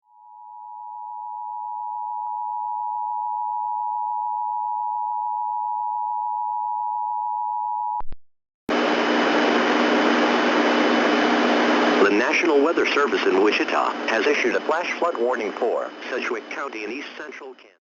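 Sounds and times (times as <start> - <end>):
loud hiss with low hum: 8.7 - 17.7.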